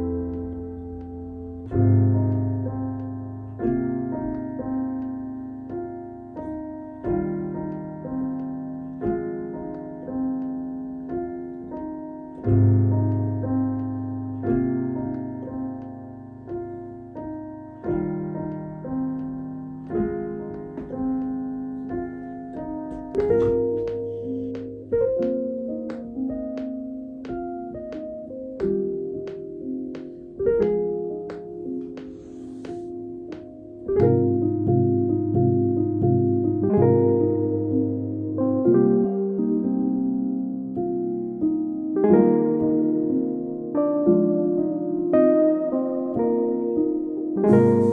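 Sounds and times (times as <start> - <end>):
piano chords ringing: 0.0 - 47.9
quick high piano notes: 47.4 - 47.9.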